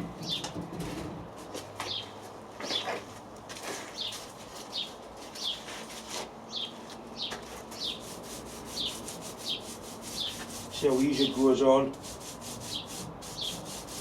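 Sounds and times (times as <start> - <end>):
paint roller wet rubbing: 7.5 - 14.0.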